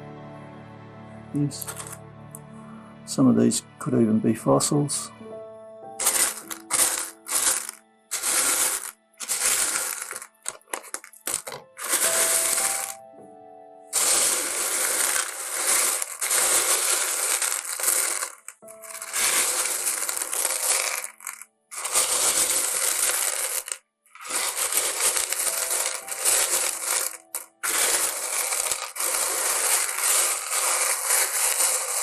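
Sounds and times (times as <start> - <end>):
stones clattering and clinking: 1.5 - 2.0, 6.0 - 13.0, 14.0 - 32.0.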